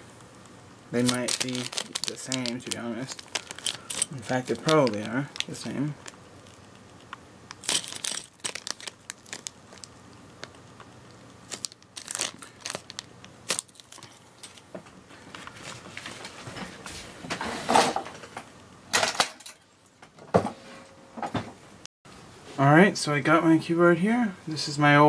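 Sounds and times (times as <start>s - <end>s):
plastic packaging crinkling: 0.9s - 14.6s.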